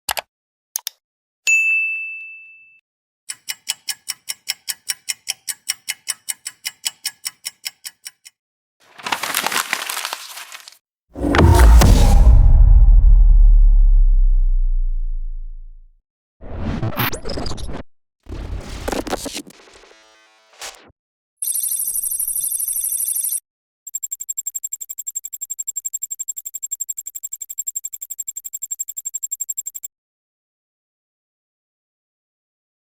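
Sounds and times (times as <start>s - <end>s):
clock ticking: 3.3s - 8.3s
paper crumpling: 8.8s - 10.8s, 18.4s - 19.5s
dense ringing effect: 11.2s - 15.8s
fast electronic beeps: 23.9s - 29.9s.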